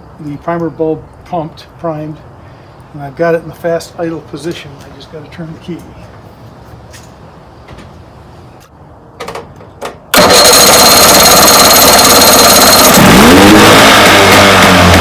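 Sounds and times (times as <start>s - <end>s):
outboard motor starting and idling: 10.1s - 15.0s.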